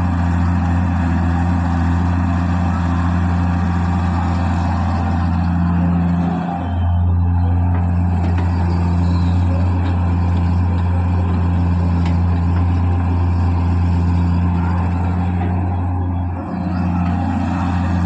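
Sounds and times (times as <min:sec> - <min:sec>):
diesel engine drone: 0:00.0 - 0:18.0.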